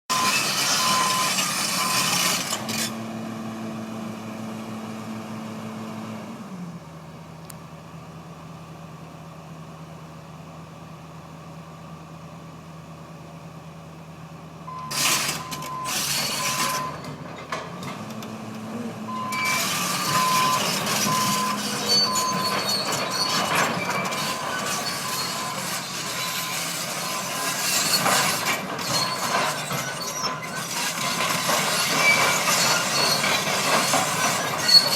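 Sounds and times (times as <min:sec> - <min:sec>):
back-up alarm beeping: 0:00.1 - 0:02.2, 0:14.7 - 0:17.1, 0:19.1 - 0:25.7
heavy truck engine running: 0:00.1 - 0:34.9
loud bursts of machinery noise: 0:14.7 - 0:17.2, 0:19.3 - 0:34.9.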